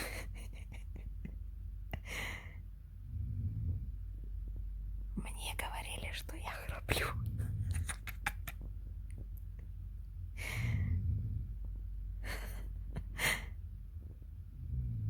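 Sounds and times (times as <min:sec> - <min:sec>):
faint low hum: 0:00.0 - 0:15.0.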